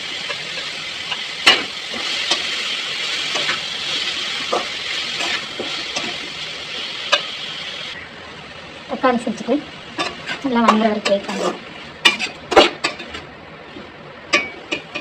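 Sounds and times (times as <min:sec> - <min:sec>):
vegetables sizzling in hot oil: 0:00.0 - 0:15.0
spoon scraping and knocking pan: 0:03.2 - 0:06.3, 0:10.0 - 0:13.2.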